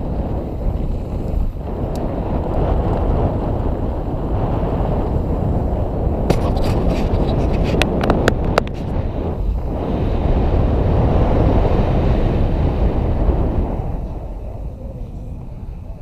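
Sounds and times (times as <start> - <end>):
wind rumbling on microphone: 0.0 - 16.0
bike knocks and clatters: 6.2 - 8.9.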